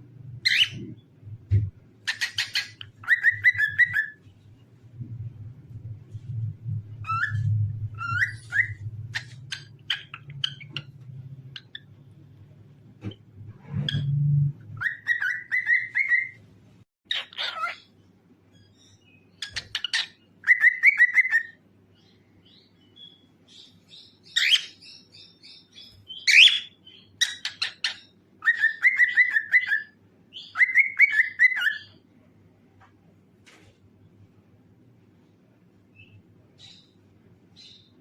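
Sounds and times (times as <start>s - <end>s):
cockatiel whistling and chirping: 0.4s - 0.9s, 2.1s - 4.2s, 7.0s - 10.9s, 14.7s - 16.4s, 18.6s - 21.6s, 23.0s - 32.0s.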